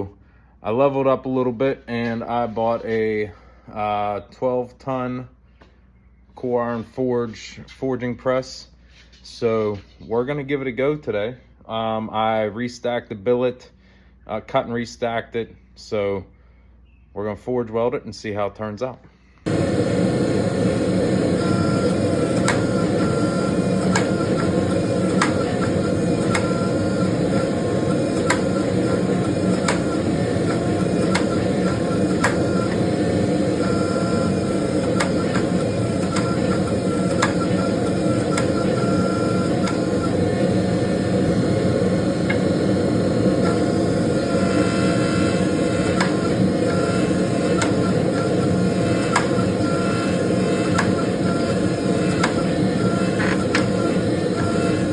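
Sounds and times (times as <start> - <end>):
forging equipment droning: 19.5 - 54.9.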